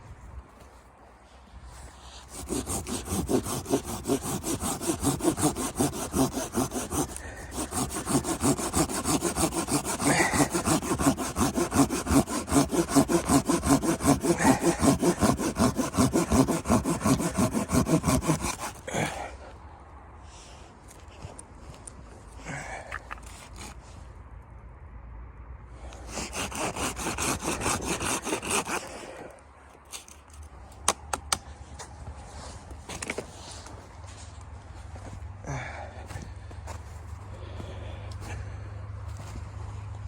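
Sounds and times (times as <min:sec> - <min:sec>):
hand saw cutting wood: 0:02.0 - 0:19.3, 0:23.2 - 0:23.8, 0:25.9 - 0:29.3.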